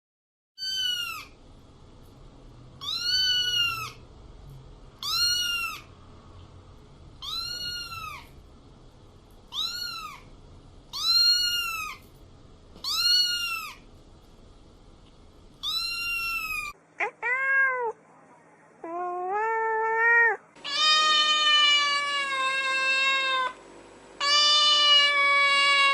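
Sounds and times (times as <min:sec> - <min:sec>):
kitten meowing: 0:00.6 - 0:01.4, 0:02.8 - 0:04.0, 0:05.0 - 0:05.9, 0:07.2 - 0:08.4, 0:09.5 - 0:10.3, 0:10.9 - 0:12.0, 0:12.8 - 0:13.8, 0:15.6 - 0:18.0, 0:18.9 - 0:23.6, 0:24.2 - 0:25.9
lower-pitched cat meows: 0:07.2 - 0:08.3, 0:09.5 - 0:10.3, 0:15.6 - 0:18.0, 0:18.8 - 0:23.6, 0:24.2 - 0:25.9.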